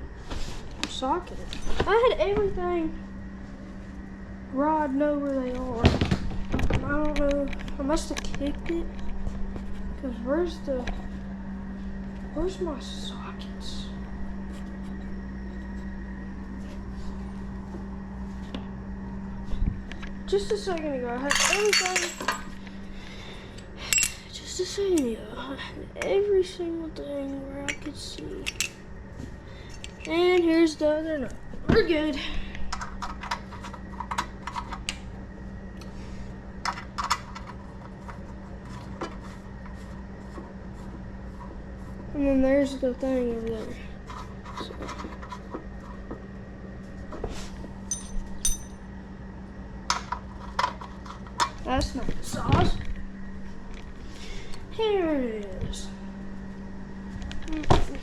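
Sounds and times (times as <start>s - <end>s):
low electrical hum: 0.0s - 58.0s
metal hardware clinking: 21.3s - 22.5s, 27.7s - 28.8s, 47.9s - 48.8s.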